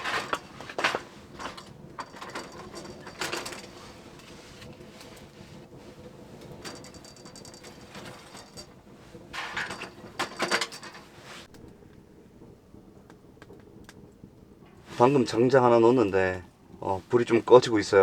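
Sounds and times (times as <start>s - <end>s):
log clunking into stove: 0.0s - 11.7s.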